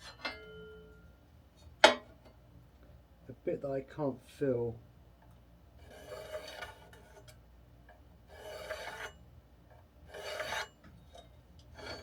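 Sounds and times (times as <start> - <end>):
wooden cutting board scraping: 5.8 - 7.3, 8.3 - 9.2, 10.1 - 10.7, 11.8 - 12.0.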